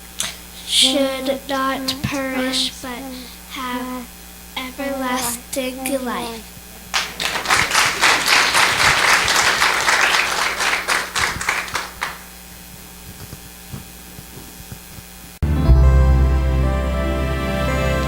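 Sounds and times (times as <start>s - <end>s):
congregation applauding: 6.9s - 12.5s.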